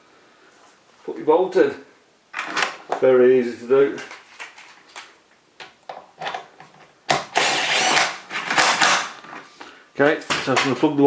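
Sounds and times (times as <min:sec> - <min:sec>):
impact driver running: 0:07.1 - 0:09.2.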